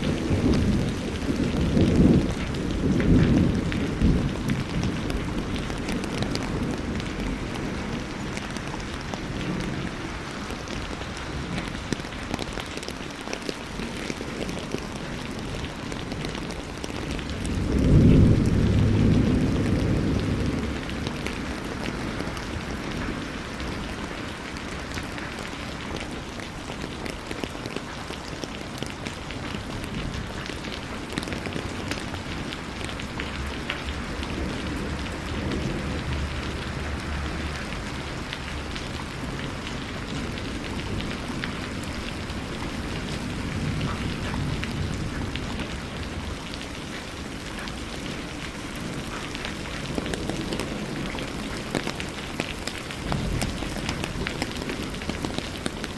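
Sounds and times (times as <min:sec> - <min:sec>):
steady rain: 0:00.0 - 0:55.9.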